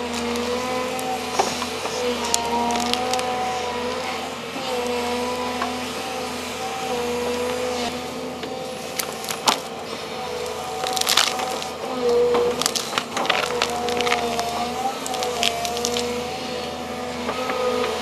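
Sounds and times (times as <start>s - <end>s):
excavator engine and hydraulics: 0.0s - 18.0s
sharp cracks and knocks: 0.1s - 3.3s, 9.0s - 9.7s, 10.8s - 16.2s.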